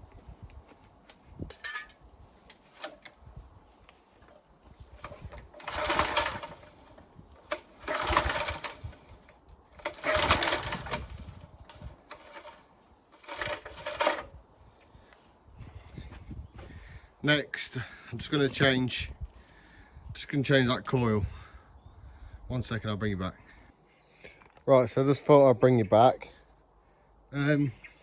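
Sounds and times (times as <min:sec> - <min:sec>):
recoil pull cord cranking engine: 0:02.7 - 0:03.2, 0:04.2 - 0:14.4.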